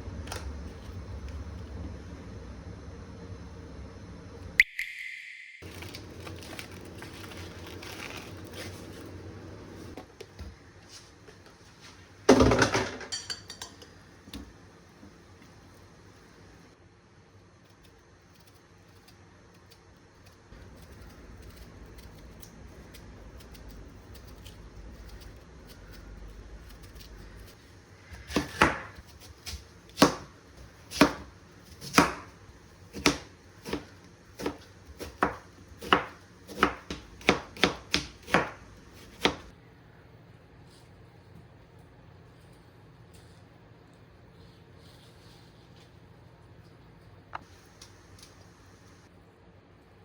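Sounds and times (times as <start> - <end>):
low steady hum: 0.0 - 50.0
knife chopping on cutting board: 28.2 - 39.5.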